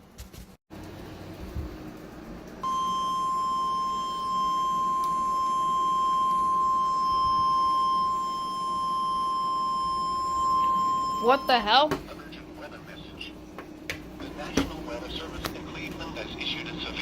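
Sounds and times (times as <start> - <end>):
steady warning alarm beep: 2.6 - 11.9.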